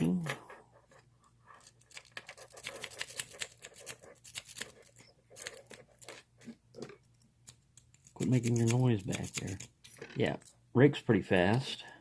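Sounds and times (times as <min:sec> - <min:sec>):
lock pick clicking and scratching: 0:00.9 - 0:10.5.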